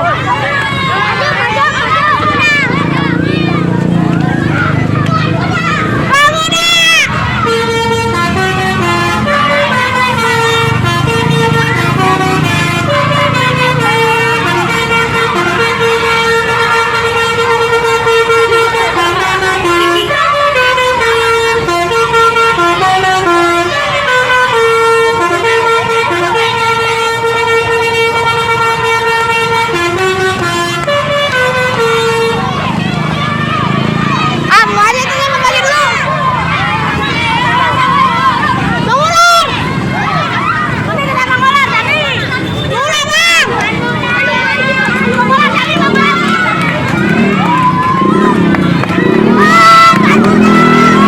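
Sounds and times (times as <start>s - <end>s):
bus engine running: 0.0s - 51.0s
musical air horn playing a tune: 6.1s - 32.7s.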